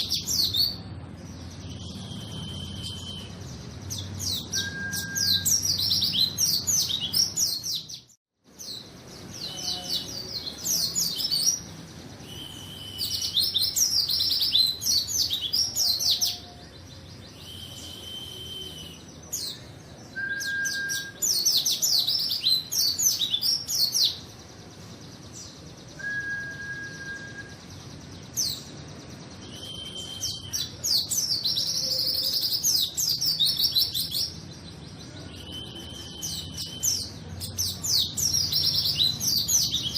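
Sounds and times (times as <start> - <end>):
songbird twittering chirps: 0.0 - 39.9
short level whistles: 17.4 - 19.0, 35.3 - 37.0.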